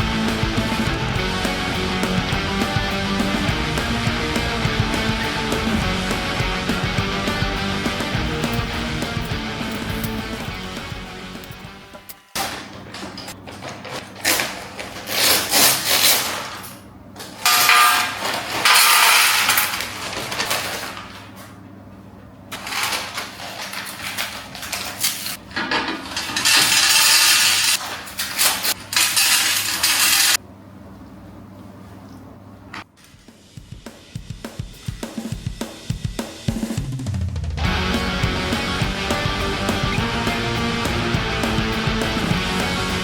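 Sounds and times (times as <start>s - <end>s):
small hard pieces clicking: 8.2s - 12.2s
rustling and scraping packaging: 8.2s - 21.6s, 22.5s - 30.4s.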